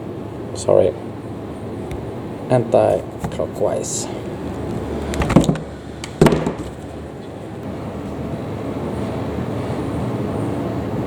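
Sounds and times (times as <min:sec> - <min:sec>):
low background noise: 0:00.0 - 0:11.0
handling noise: 0:01.9 - 0:07.1.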